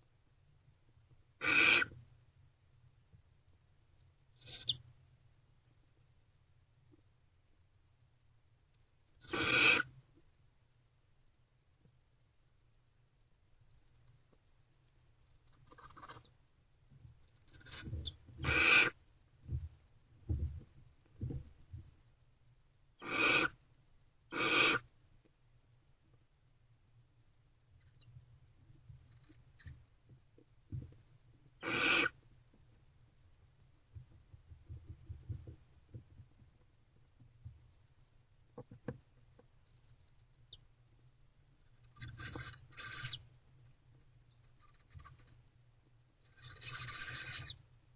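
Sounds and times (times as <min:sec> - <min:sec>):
owls hissing screeches: 0:01.4 - 0:01.9, 0:09.2 - 0:09.9, 0:18.4 - 0:19.0, 0:23.0 - 0:23.6, 0:24.3 - 0:24.8, 0:31.6 - 0:32.2, 0:46.4 - 0:47.6
owls scratching on wood: 0:01.4 - 0:02.0, 0:04.4 - 0:04.8, 0:09.2 - 0:10.0, 0:15.4 - 0:16.3, 0:17.3 - 0:19.0, 0:23.0 - 0:23.6, 0:24.3 - 0:24.8, 0:31.6 - 0:32.2, 0:41.6 - 0:43.3, 0:44.3 - 0:45.4, 0:46.2 - 0:47.6.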